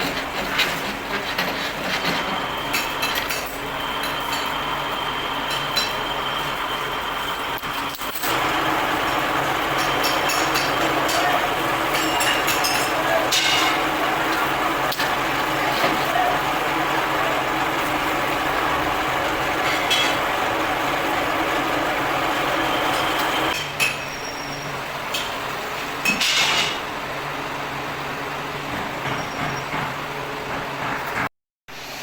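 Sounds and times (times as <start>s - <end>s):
machine running: 2.0s - 23.6s.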